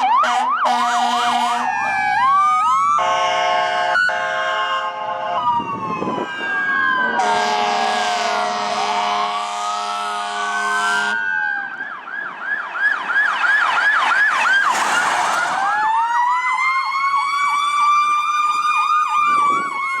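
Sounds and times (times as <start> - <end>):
second siren rising wail: 0.0 - 20.0
siren wailing: 0.0 - 20.0
siren yelping: 0.0 - 20.0
air horn blast: 0.2 - 1.7, 7.2 - 11.2.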